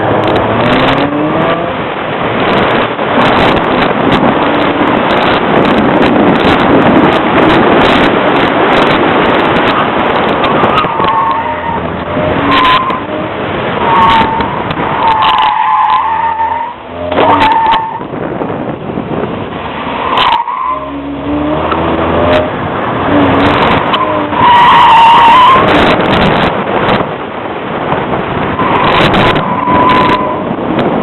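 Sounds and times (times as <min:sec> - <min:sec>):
car engine revving: 0:00.0 - 0:31.0
tyres squealing: 0:10.4 - 0:18.0.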